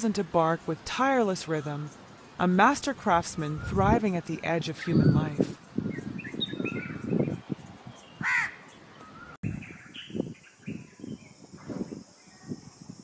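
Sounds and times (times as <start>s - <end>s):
birds chirping: 0.0s - 12.3s
harsh bird call: 6.0s - 9.4s.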